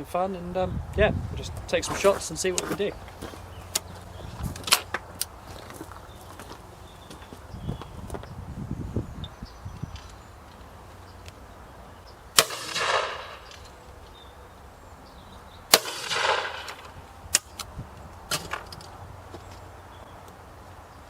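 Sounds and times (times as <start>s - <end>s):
shotgun shots with echo: 12.4s - 13.6s, 15.7s - 16.9s.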